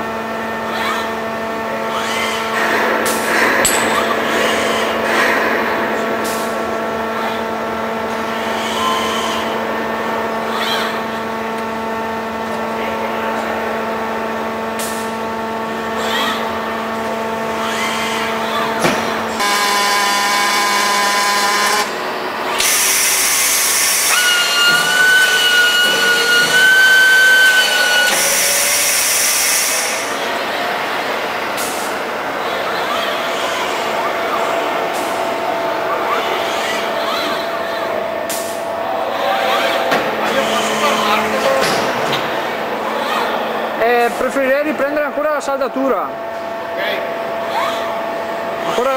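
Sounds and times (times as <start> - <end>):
machine hum: 0.0 - 48.9
steady high whine: 0.0 - 48.9
servo motors whining: 8.3 - 9.6, 17.5 - 30.3
welding arc hissing: 19.4 - 30.2.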